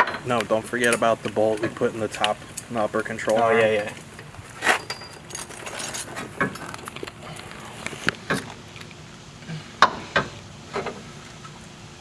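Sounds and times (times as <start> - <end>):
hand tools clanking on metal: 0.0 - 8.5.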